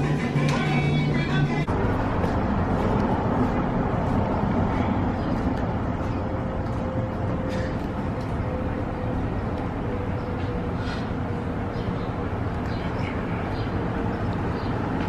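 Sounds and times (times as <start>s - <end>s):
music: 0.0s - 1.7s
low traffic rumble: 0.0s - 15.0s.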